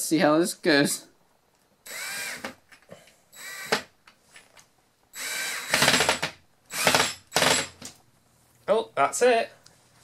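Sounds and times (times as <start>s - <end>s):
power drill motor whine: 1.9s - 2.5s, 3.4s - 3.9s, 5.2s - 7.6s.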